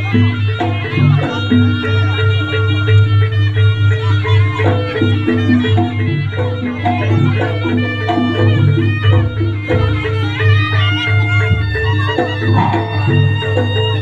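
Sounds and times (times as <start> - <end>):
percussion notes: 0.0 - 14.0
shrill reedy wind melody: 12.2 - 14.0
low drone: 12.5 - 13.8.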